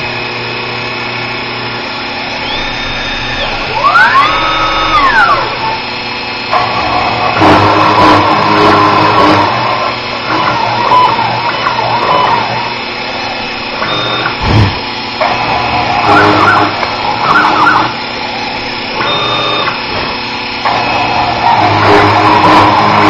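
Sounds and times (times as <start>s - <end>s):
stepper motors whining: 0.0s - 23.0s
short low thump: 14.4s - 14.8s.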